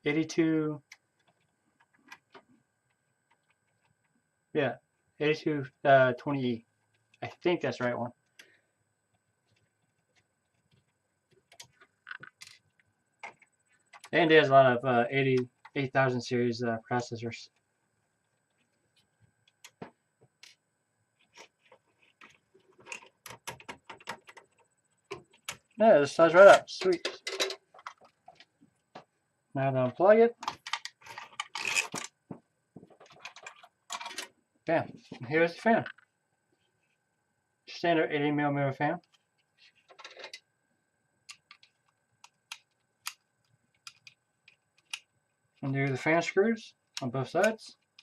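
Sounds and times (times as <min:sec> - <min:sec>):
plastic and metal parts clicking: 0:30.4 - 0:32.2, 0:41.3 - 0:45.1.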